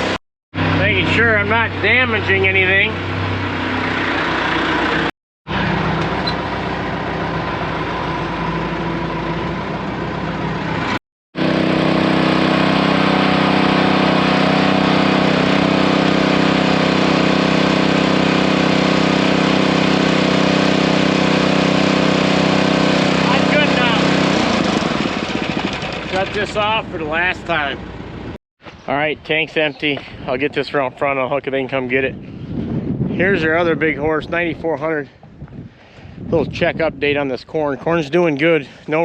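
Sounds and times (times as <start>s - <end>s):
engine running: 0.0s - 28.4s.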